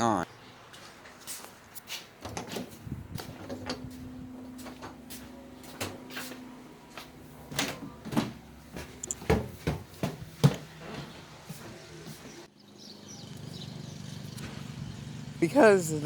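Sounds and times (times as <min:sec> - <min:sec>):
footsteps: 0:00.7 - 0:12.5.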